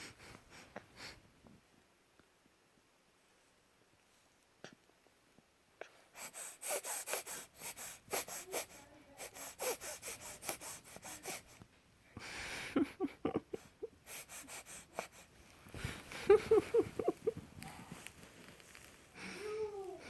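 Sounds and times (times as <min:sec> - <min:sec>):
congested snuffly breathing: 0:06.0 - 0:11.6, 0:13.6 - 0:18.2.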